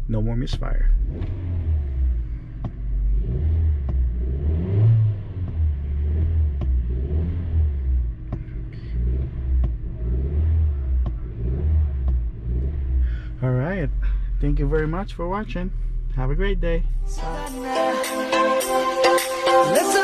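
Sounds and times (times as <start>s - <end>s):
car engine low rumble: 0.0s - 17.6s.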